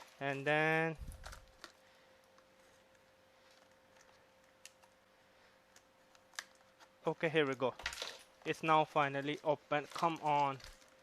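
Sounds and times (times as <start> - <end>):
plastic package being opened: 1.0 - 2.4, 5.7 - 11.0.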